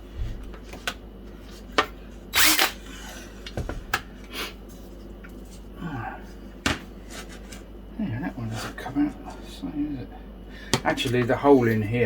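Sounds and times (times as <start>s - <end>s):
small electric drill running: 2.3s - 2.8s.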